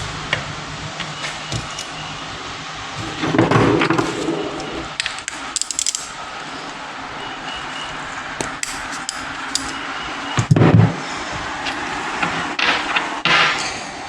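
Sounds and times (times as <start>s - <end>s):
metal tools clinking on engine: 5.1s - 6.2s, 8.5s - 9.8s.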